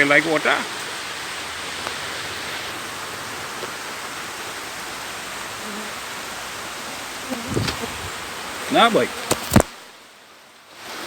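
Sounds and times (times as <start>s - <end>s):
heavy rain falling: 0.0s - 11.0s.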